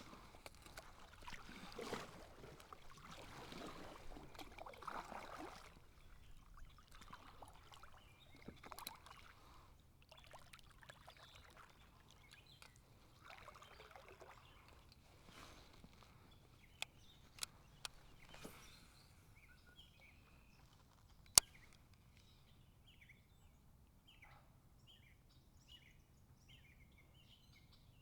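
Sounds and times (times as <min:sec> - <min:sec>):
paddle strokes swishing in water: 0:00.0 - 0:09.6
water drips: 0:00.1 - 0:09.4
small clicks: 0:16.8 - 0:18.7, 0:20.7 - 0:22.3.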